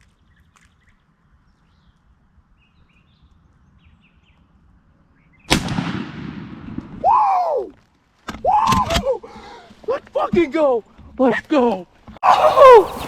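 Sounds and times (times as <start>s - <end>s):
songbird chirps: 0.0s - 5.5s, 10.5s - 13.0s.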